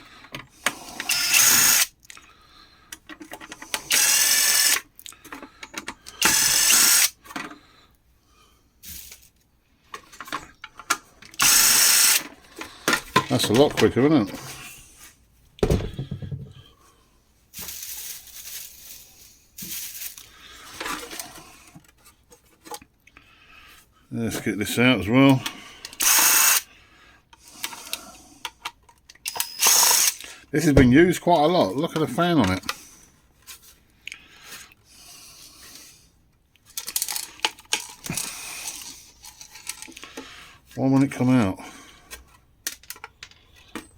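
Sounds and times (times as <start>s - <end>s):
knocks and clinks of parts: 2.9s - 7.6s, 28.5s - 30.2s, 36.6s - 40.3s, 42.1s - 43.9s.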